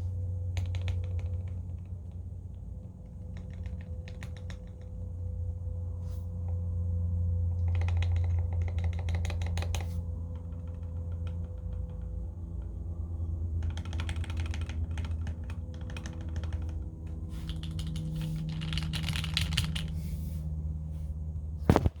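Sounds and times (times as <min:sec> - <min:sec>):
steady low hum: 0:00.0 - 0:22.0
typing on mechanical keyboard: 0:00.5 - 0:05.0, 0:07.6 - 0:12.8, 0:13.5 - 0:20.0.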